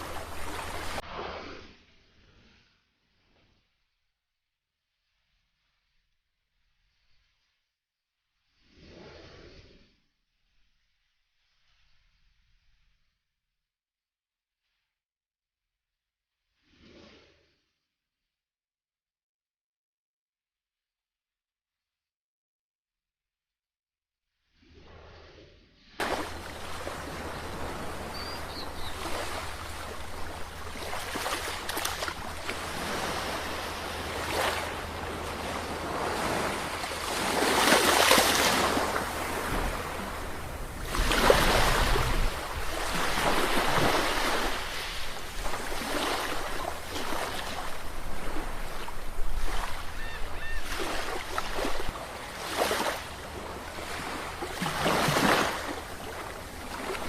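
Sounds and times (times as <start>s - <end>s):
sea waves breaking: 0.0s - 1.5s, 26.0s - 57.0s.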